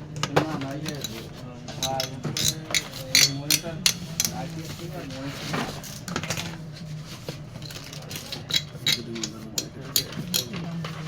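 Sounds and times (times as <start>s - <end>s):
faint background chatter: 0.0s - 11.0s
small hard parts clicking: 0.6s - 4.6s, 7.6s - 10.7s.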